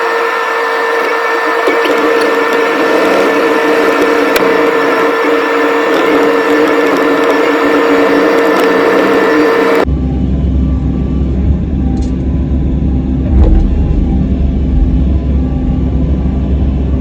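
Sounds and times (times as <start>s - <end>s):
high whirring noise: 0.0s - 17.0s
diesel engine rumbling: 9.7s - 17.0s.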